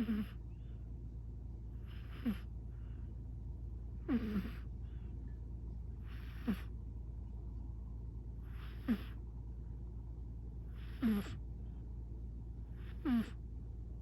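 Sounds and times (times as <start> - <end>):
cat snoring: 0.0 - 0.4, 1.8 - 2.5, 4.0 - 4.7, 6.0 - 6.7, 8.4 - 9.2, 10.7 - 11.4, 12.7 - 13.4
steady low hum: 0.0 - 14.0.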